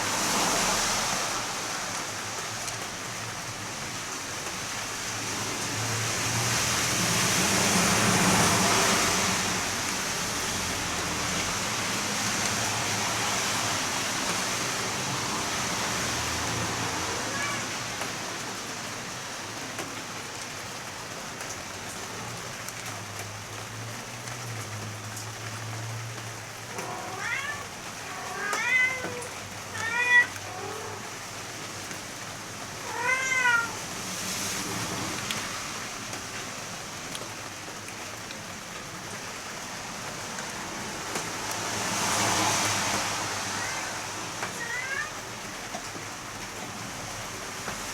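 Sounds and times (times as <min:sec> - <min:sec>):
heavy rain hissing: 0:00.0 - 0:47.9
cat meowing: 0:17.1 - 0:18.0, 0:26.7 - 0:31.2, 0:32.8 - 0:33.9, 0:43.3 - 0:45.4.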